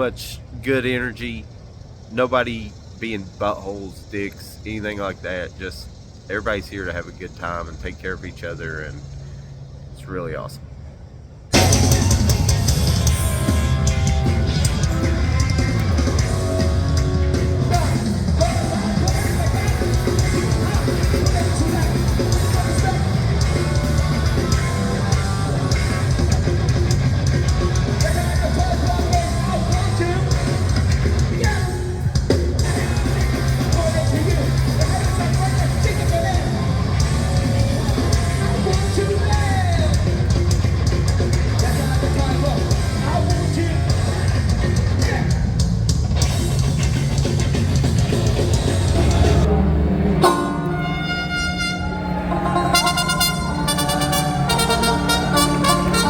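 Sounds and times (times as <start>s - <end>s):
pounding drums: 11.5s - 49.5s
distorted guitars: 11.5s - 56.0s
shouted vocals: 17.6s - 26.0s, 51.8s - 56.0s.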